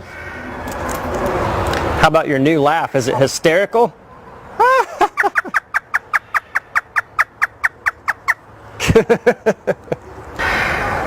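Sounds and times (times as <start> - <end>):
parrot imitating laughter: 4.6 - 9.8.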